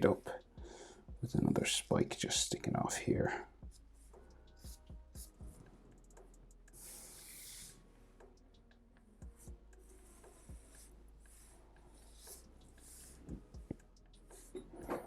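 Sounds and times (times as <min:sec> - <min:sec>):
pencil scratching on paper: 0:06.7 - 0:07.9, 0:09.4 - 0:15.0.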